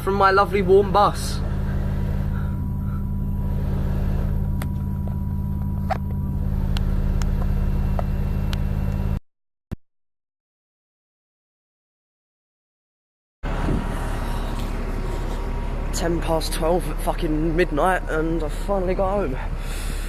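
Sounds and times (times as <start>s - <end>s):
bus engine running: 0.0s - 9.2s, 13.4s - 20.0s.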